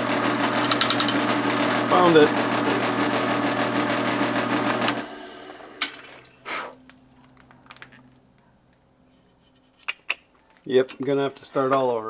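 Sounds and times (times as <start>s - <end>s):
electric drill winding down: 0.0s - 5.9s.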